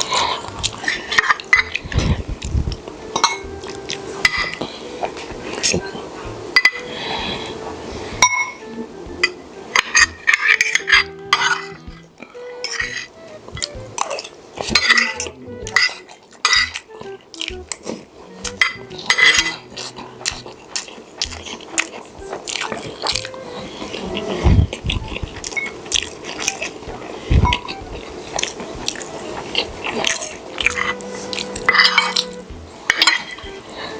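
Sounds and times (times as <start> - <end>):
cutlery clinking on a plate: 3.1 - 3.5, 4.2 - 6.0, 6.6 - 7.1, 8.2 - 8.6, 9.2 - 11.8, 12.6 - 13.1, 14.0 - 16.9, 18.5 - 21.9, 28.4 - 32.3, 32.9 - 33.5.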